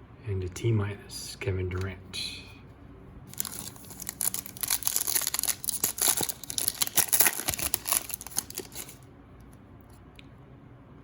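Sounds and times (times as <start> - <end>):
foil wrapper crinkling and tearing: 3.3 - 9.0.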